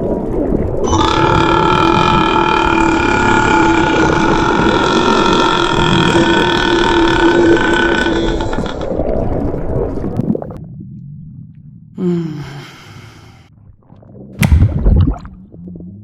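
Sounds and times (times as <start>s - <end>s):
person belching: 0.9s - 8.8s.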